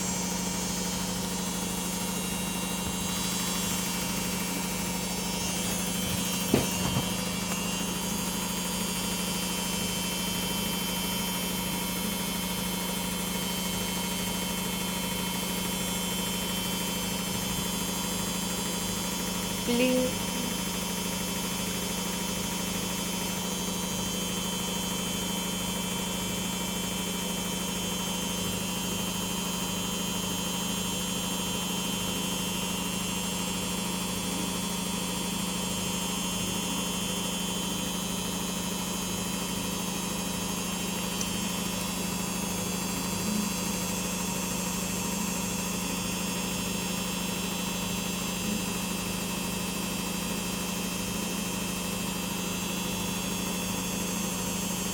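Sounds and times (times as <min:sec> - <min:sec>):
washing machine humming: 0:00.0 - 0:54.9.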